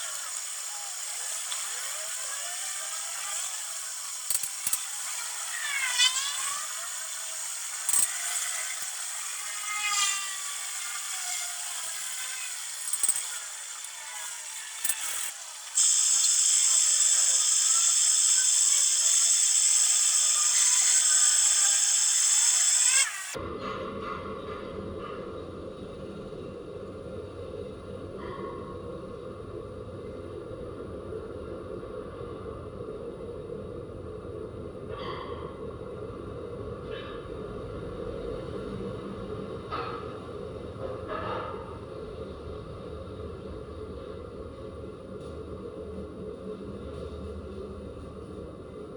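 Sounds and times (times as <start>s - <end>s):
metal lathe hum: 0.0s - 23.4s
power tool whine and hiss: 0.0s - 23.4s.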